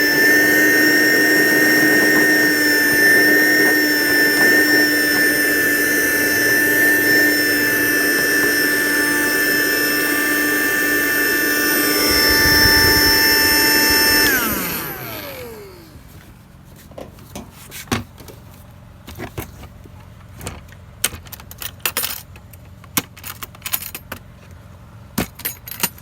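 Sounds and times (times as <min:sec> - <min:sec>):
vacuum cleaner whining: 0:00.0 - 0:16.5.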